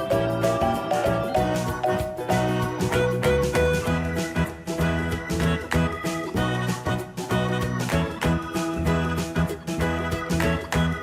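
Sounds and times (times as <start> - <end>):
plucked guitar-like notes: 0.0 - 3.8
upbeat background music: 0.0 - 11.0.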